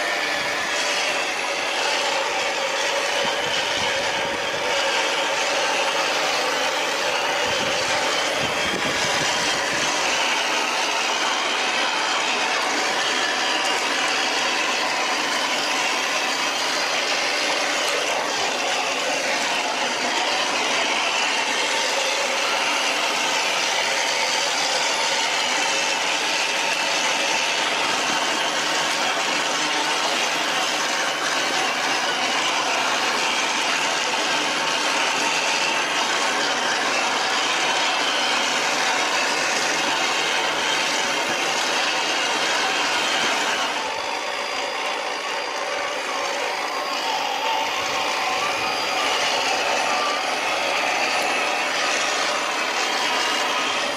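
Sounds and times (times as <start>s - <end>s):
toy truck motor whirring: 0.0s - 53.9s.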